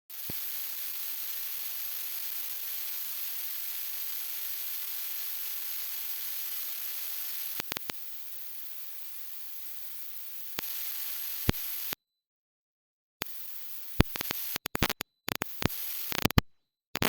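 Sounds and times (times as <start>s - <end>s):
sharp clicks: 14.0s - 17.0s.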